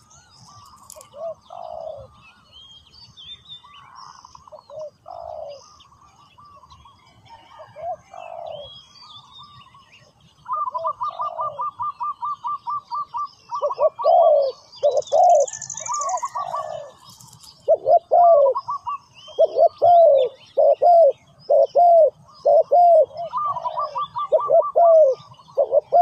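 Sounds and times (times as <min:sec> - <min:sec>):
doves cooing: 0:00.0 - 0:02.2, 0:04.0 - 0:06.0, 0:07.3 - 0:08.8, 0:10.4 - 0:26.0
small birds chirping: 0:00.0 - 0:26.0.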